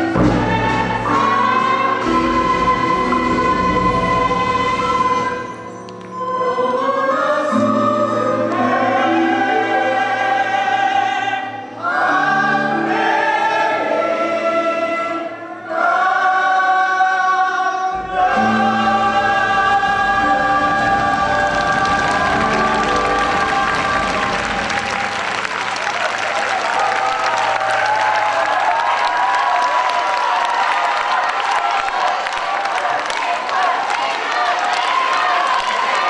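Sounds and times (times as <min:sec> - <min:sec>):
instrumental accompaniment: 0:00.0 - 0:16.1, 0:18.0 - 0:26.8
children's choir singing: 0:00.0 - 0:27.9, 0:28.8 - 0:36.0.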